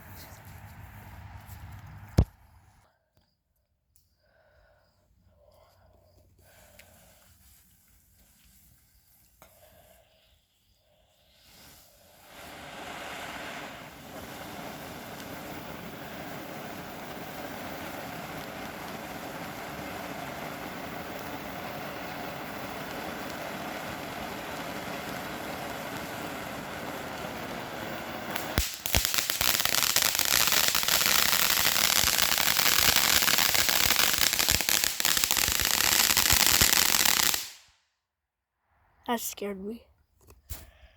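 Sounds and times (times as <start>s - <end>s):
firework crackling and popping: 0.0s - 2.8s, 11.1s - 37.8s
fountain firework hissing: 11.1s - 37.7s.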